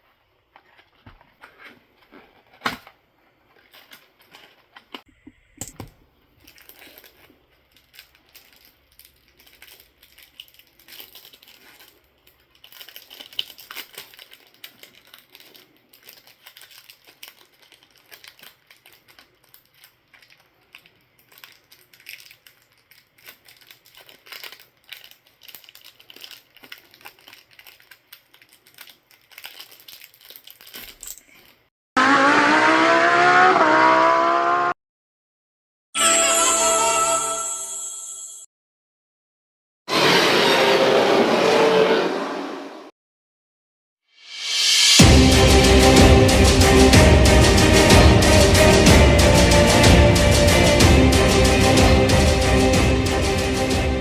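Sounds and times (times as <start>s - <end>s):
foil wrapper crinkling and tearing: 0.5s - 31.7s
cards being handled: 0.6s - 8.2s
wrapper sharp snap: 2.5s - 3.0s, 3.7s - 12.0s, 21.2s - 31.6s.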